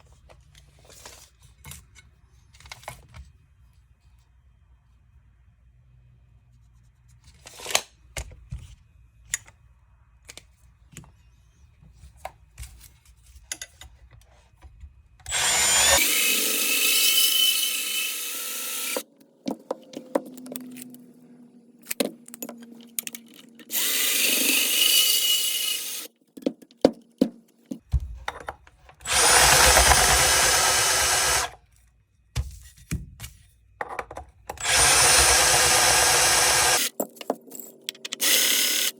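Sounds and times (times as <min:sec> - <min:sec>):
power drill running: 0:15.3 - 0:19.0, 0:23.7 - 0:26.1, 0:29.0 - 0:31.6, 0:34.6 - 0:36.9, 0:38.2 - 0:38.9.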